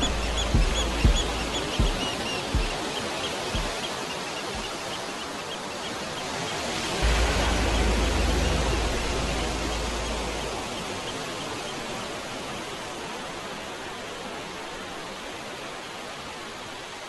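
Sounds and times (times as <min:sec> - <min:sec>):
wind rumble on microphone: 0:00.0 - 0:03.8, 0:06.6 - 0:13.9
wind through tree foliage: 0:00.0 - 0:17.0.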